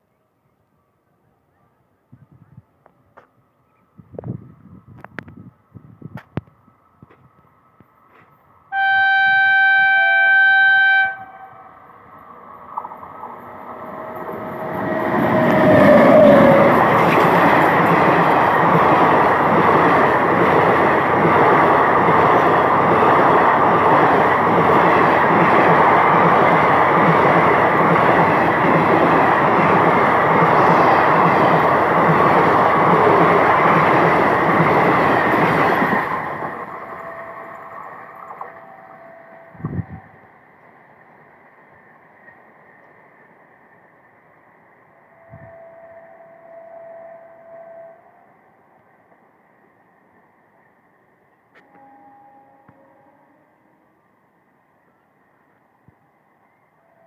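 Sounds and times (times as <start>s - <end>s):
locomotive horn: 8.7s - 11.8s, 36.8s - 37.8s, 38.4s - 40.2s, 45.1s - 48.4s, 51.6s - 53.9s
train wheels rushing on rails: 11.8s - 44.1s.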